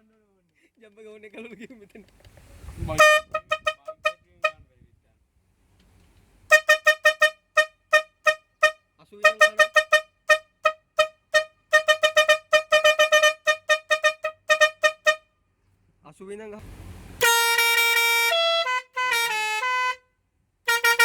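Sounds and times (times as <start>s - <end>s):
vehicle horn short beeps: 2.9s - 4.7s, 6.5s - 15.3s, 17.2s - 20.0s, 20.7s - 21.0s.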